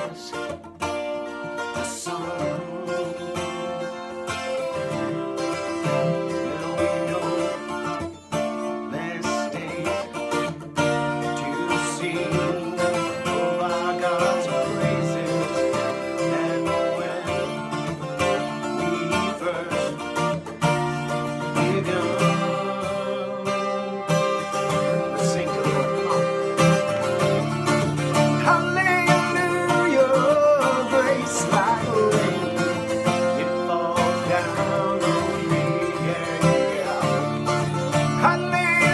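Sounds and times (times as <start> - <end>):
man singing a hymn: 0.0 - 0.5, 1.8 - 3.8, 4.6 - 7.9, 8.9 - 38.9
guitar strumming: 0.0 - 38.9.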